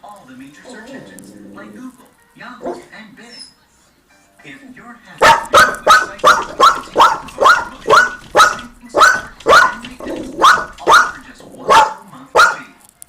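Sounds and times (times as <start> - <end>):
dog barking: 2.6 - 2.9, 5.2 - 12.7.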